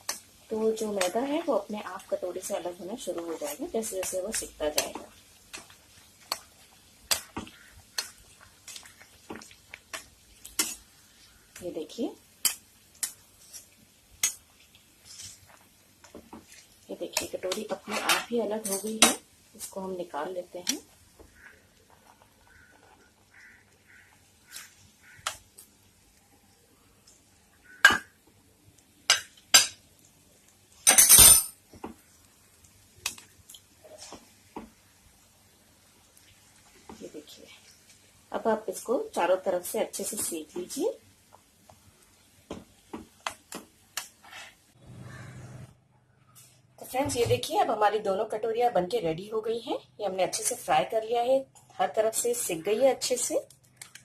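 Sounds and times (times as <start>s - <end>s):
oil frying hiss: 0.0s - 44.8s
metal utensils clinking: 17.6s - 19.2s, 30.9s - 31.5s
metal spoon clinking against pan: 18.6s - 19.2s.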